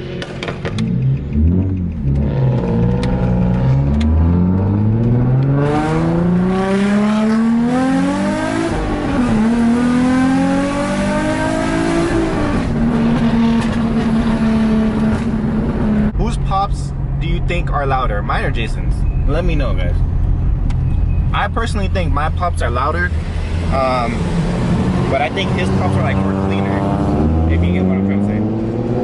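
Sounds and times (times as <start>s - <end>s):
car engine accelerating: 0.0s - 16.2s, 21.9s - 29.0s
exhaust pops: 0.1s - 5.5s.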